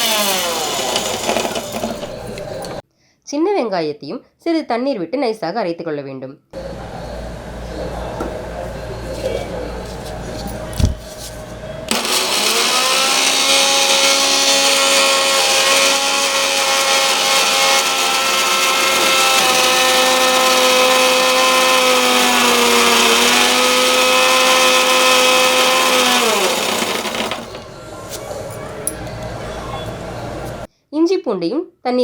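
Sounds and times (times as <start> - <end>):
mixer grinder motor whining: 0.0 - 2.8, 10.5 - 30.7.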